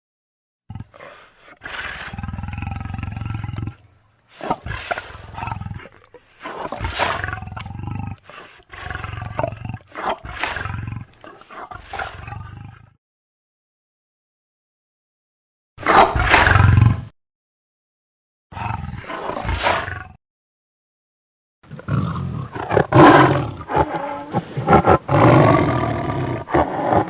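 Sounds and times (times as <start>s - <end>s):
lion roaring and growling: 21.7s - 27.0s.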